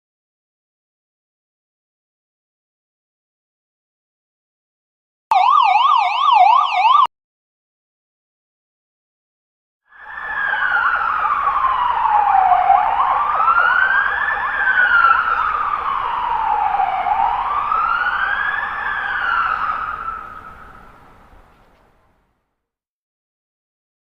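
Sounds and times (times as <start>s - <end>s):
police siren wailing: 5.3s - 7.1s, 9.9s - 21.6s.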